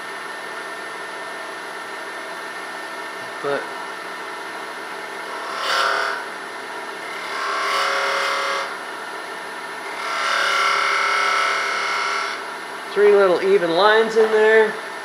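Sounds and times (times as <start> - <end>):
wood lathe running: 5.0 - 6.3, 7.0 - 8.8, 9.8 - 13.3
lathe tool cutting wood squeal: 5.3 - 6.2, 7.0 - 8.8, 9.9 - 12.4.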